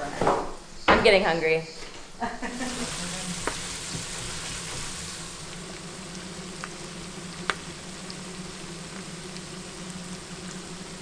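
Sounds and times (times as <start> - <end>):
squid sizzling in a pan: 2.4 - 11.0.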